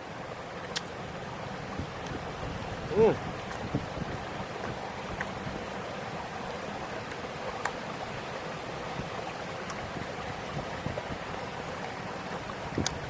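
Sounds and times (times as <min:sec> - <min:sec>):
rushing outdoor noise: 0:00.0 - 0:13.0
faint sharp clicks: 0:00.7 - 0:00.9, 0:12.8 - 0:13.0.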